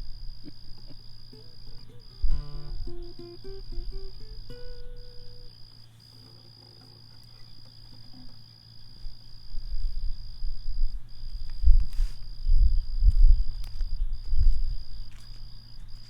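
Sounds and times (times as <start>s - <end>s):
high-pitched insect trill: 0.0s - 16.0s
music: 1.4s - 5.5s
low rumble on microphone: 7.2s - 15.1s.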